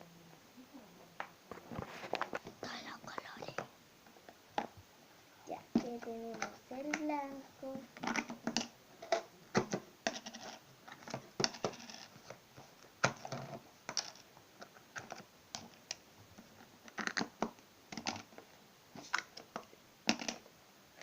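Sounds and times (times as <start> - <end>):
plastic tubs clicking and clattering: 7.9 - 12.4, 13.0 - 18.4, 19.0 - 20.5.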